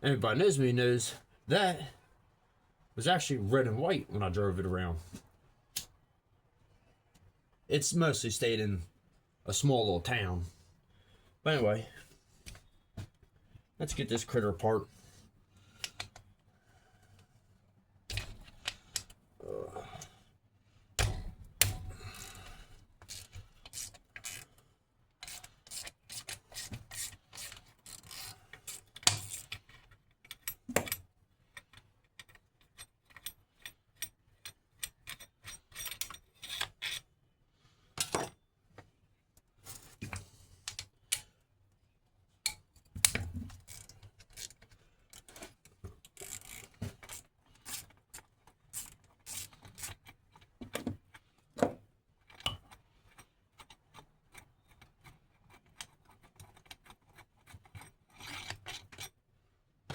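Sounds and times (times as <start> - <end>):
wrench and metal parts clinking: 32.2 - 37.0.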